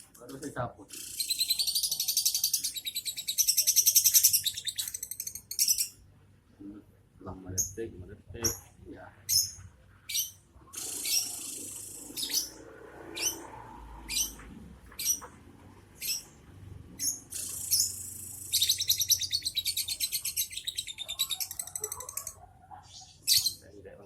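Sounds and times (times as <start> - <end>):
lovebird chirping and chattering: 0.9 - 6.0, 9.3 - 15.3, 16.0 - 16.4, 17.0 - 23.6.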